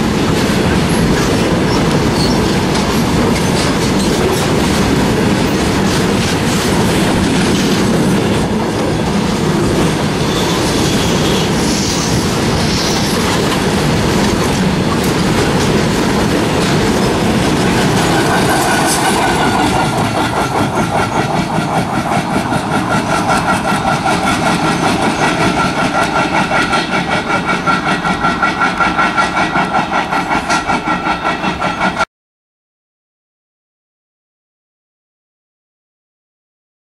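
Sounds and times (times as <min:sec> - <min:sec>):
freight train wheels rumbling: 0:00.0 - 0:32.0
pulsing brake squeal: 0:01.7 - 0:02.5, 0:10.3 - 0:13.2.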